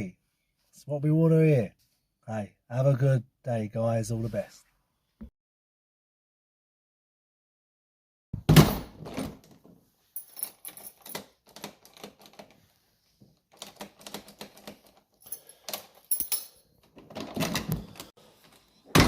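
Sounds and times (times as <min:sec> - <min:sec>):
door lock clicks and rattles: 0:13.5 - 0:15.0.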